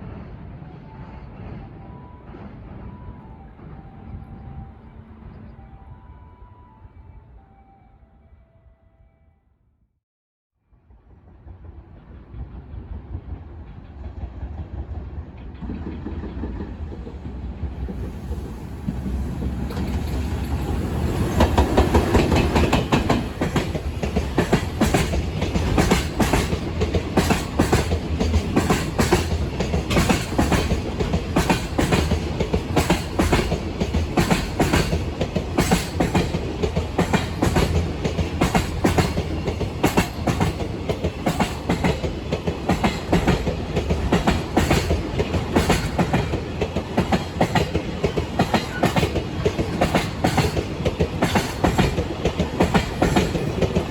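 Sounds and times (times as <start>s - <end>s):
train rumble passing: 0.0s - 7.7s, 10.7s - 53.9s
train wheels clacking on rail joints: 13.7s - 53.9s.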